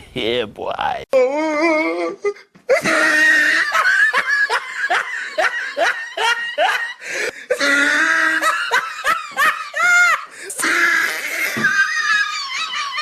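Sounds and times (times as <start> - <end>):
person laughing loudly: 2.7 - 13.0.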